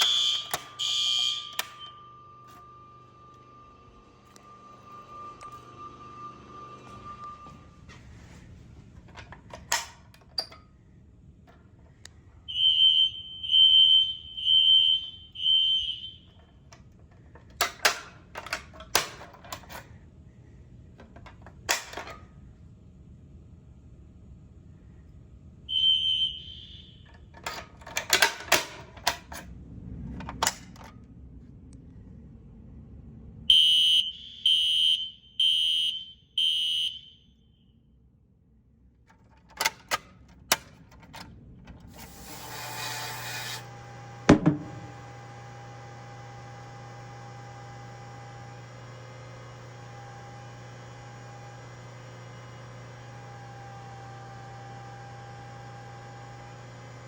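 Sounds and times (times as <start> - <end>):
shrill electronic alarm beeps: 0.0 - 7.8, 12.4 - 16.5, 25.7 - 27.2, 33.5 - 37.7
steady electrical hum: 0.0 - 49.4
thump: 44.3 - 44.9.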